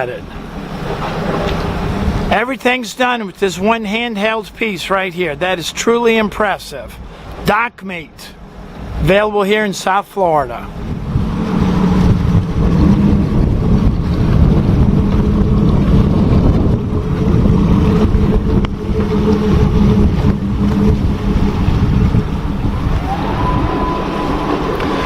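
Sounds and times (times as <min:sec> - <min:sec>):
wind noise on microphone: 0:00.0 - 0:02.4, 0:10.6 - 0:25.0
boat diesel engine running: 0:00.0 - 0:07.5, 0:10.2 - 0:25.0
rising high tone: 0:10.7 - 0:25.0.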